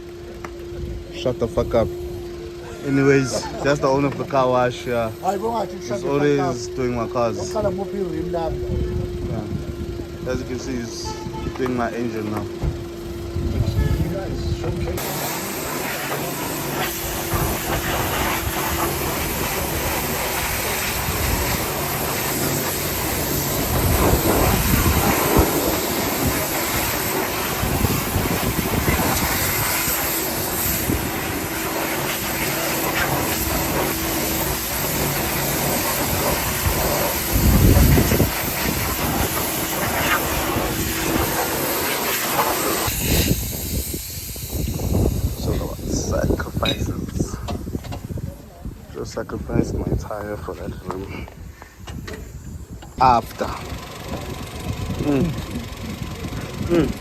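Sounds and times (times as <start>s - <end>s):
pressure washer spray hissing: 15.0s - 47.0s.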